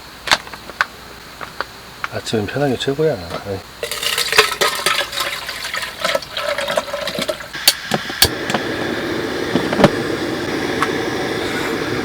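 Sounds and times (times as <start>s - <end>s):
gas burner hissing: 0.8s - 12.0s
soup pouring into a pot: 3.8s - 7.6s.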